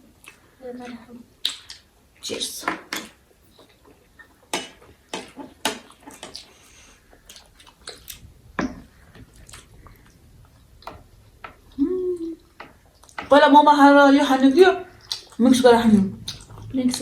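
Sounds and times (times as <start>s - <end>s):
dishes and cutlery clinking: 2.6s - 6.5s.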